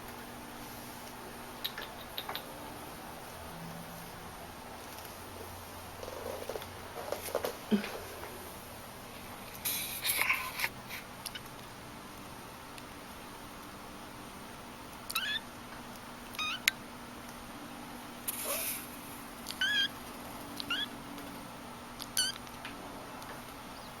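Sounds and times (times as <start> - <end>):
sharp click: 1.6 - 2.5
kitten mewing: 15.1 - 15.4, 18.3 - 18.9, 19.5 - 19.9, 20.6 - 20.9.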